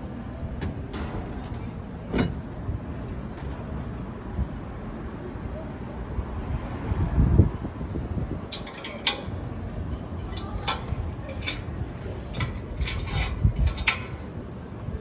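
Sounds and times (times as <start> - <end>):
light metallic clinks: 8.5 - 9.4, 10.2 - 14.3.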